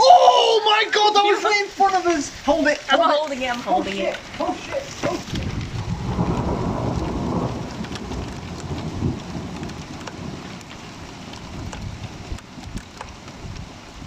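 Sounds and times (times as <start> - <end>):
heavy rain: 0.0 - 14.0
raindrops ticking: 0.0 - 14.0
thunder rumbling: 3.9 - 14.0.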